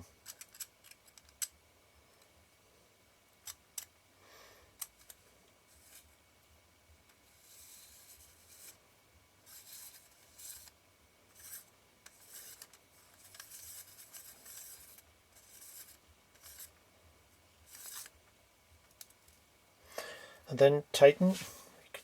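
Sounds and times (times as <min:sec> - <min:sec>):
metal ring scraping in threads: 0:07.2 - 0:08.8, 0:09.5 - 0:10.7, 0:11.3 - 0:16.7.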